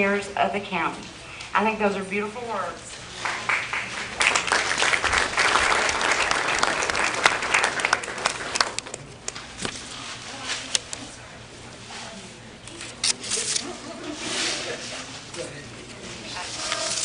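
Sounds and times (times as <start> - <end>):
audience applauding: 3.2 - 9.0.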